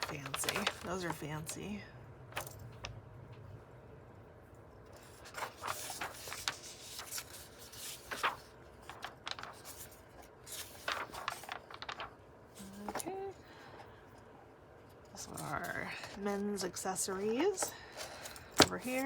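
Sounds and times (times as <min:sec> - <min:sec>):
book pages turning: 0:00.0 - 0:01.4, 0:04.9 - 0:13.2.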